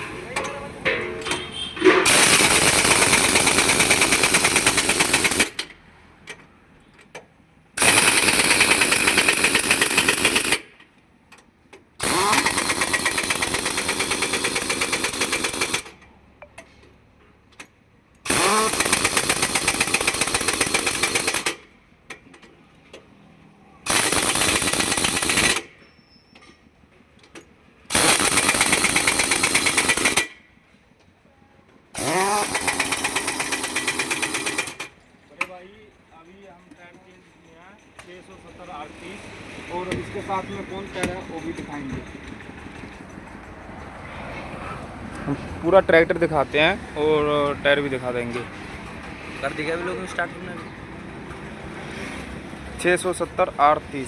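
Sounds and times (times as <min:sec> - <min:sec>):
pneumatic impact wrench hammering: 0:00.4 - 0:06.4, 0:07.8 - 0:10.8, 0:12.0 - 0:16.0, 0:18.2 - 0:22.4, 0:23.8 - 0:25.9, 0:27.3 - 0:30.4, 0:32.0 - 0:35.0.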